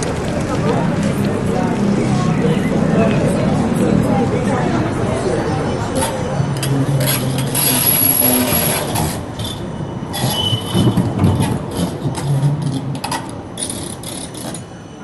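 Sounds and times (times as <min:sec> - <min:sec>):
steel wheels squealing on rails: 0:05.2 - 0:15.0.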